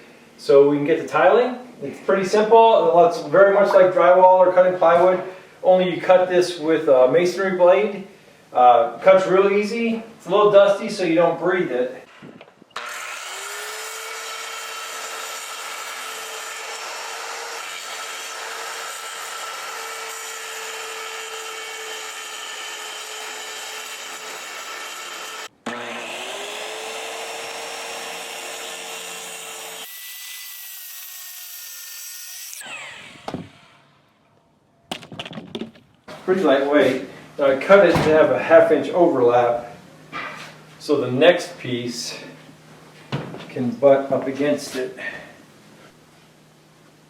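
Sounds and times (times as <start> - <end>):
power saw cutting cement board: 12.8 - 33.9.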